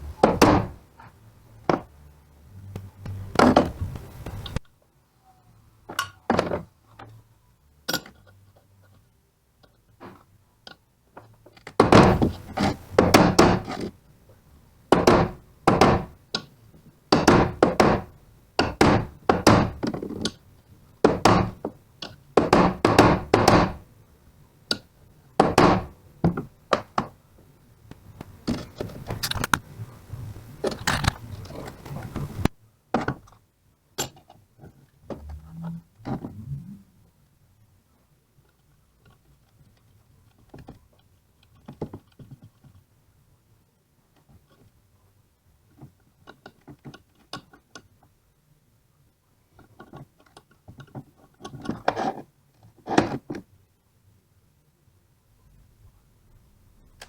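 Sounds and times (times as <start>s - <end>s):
sharp knocking on metal parts: 0.1s - 0.8s, 11.7s - 13.9s, 14.9s - 16.5s, 17.1s - 20.4s, 21.0s - 23.9s, 24.7s - 27.2s.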